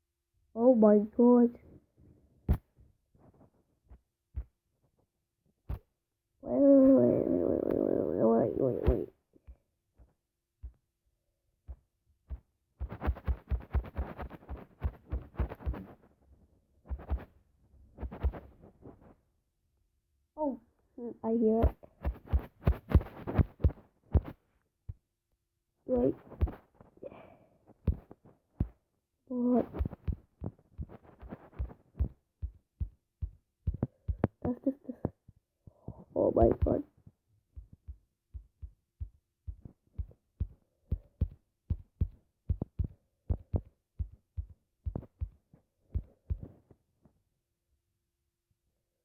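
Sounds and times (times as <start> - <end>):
short dull thumps: 29.6 - 35.2, 37.6 - 46.6.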